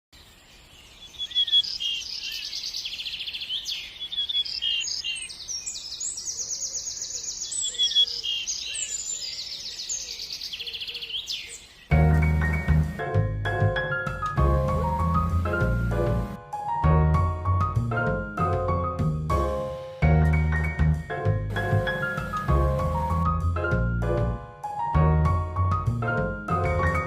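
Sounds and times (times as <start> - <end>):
music: 11.9 - 27.0.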